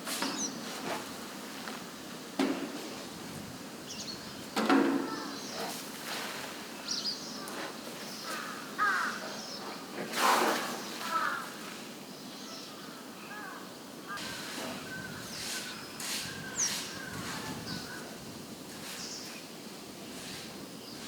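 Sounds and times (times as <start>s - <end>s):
crows cawing: 5.0s - 5.5s, 8.2s - 9.4s, 11.0s - 11.6s, 12.8s - 14.3s.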